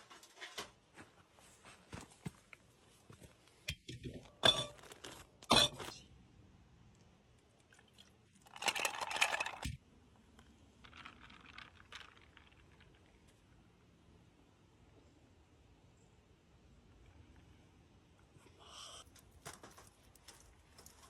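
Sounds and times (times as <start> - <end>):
crunching and crinkling handling: 4.7 - 6.0, 19.1 - 21.0.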